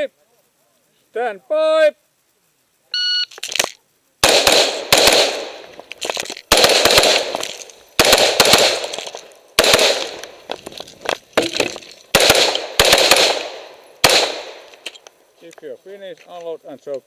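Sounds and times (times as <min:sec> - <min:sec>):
smaller sharp cracks: 0:03.3 - 0:15.2
rifle shots echoing: 0:04.2 - 0:05.8, 0:06.5 - 0:10.6, 0:11.5 - 0:14.9.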